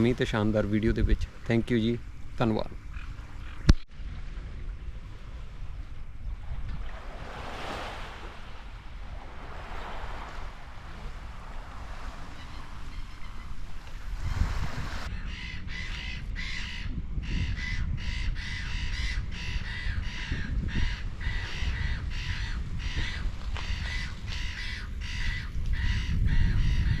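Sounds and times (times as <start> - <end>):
wind buffeting microphone: 0.0 - 27.0
birds cawing: 12.2 - 13.7, 15.1 - 27.0.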